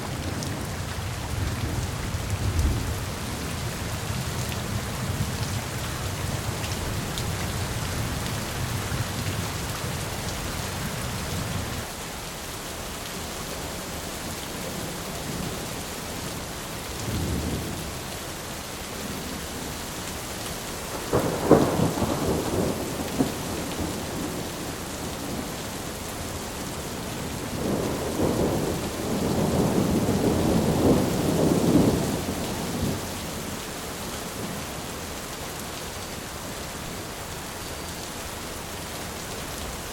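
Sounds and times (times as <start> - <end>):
heavy rain: 0.0 - 39.9
sharp crack of thunder: 20.9 - 24.4, 27.5 - 33.0
thunder rumbling: 20.9 - 25.6, 27.2 - 33.0.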